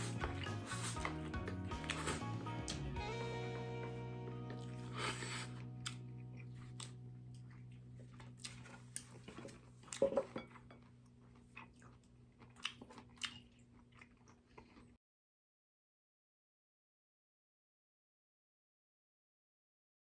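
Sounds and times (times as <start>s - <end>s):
person eating crunchy food: 0.0s - 3.0s, 3.8s - 15.0s.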